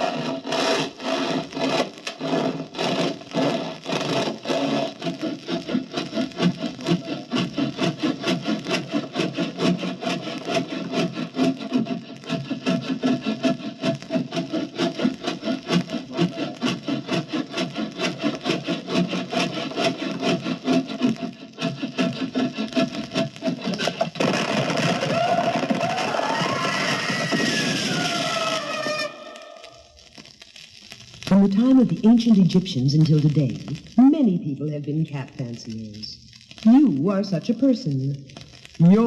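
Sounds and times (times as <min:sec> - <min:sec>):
hand saw cutting wood: 0:00.0 - 0:29.0.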